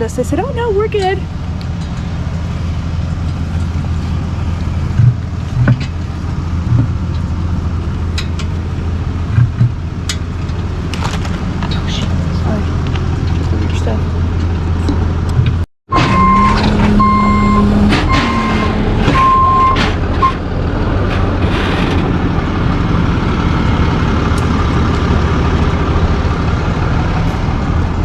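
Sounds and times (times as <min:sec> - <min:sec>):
truck engine running: 0:00.0 - 0:28.0
backup alarm beeping: 0:15.9 - 0:20.4.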